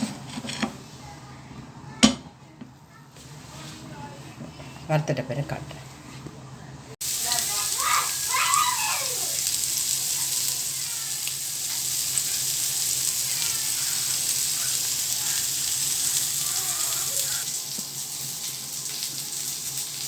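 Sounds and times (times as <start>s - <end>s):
fish sizzling in oil: 7.0s - 20.0s.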